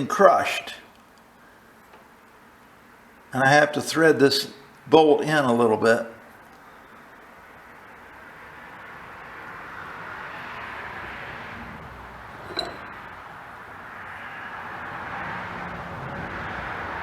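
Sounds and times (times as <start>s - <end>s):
metallic clink: 12.4s - 13.0s.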